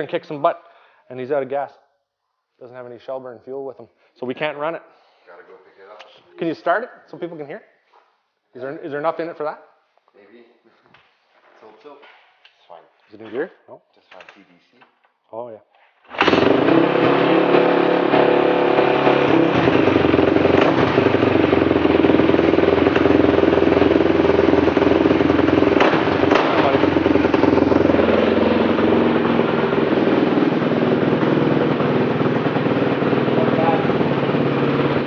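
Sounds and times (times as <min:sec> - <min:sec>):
quad bike engine running: 0:16.2 - 0:35.0.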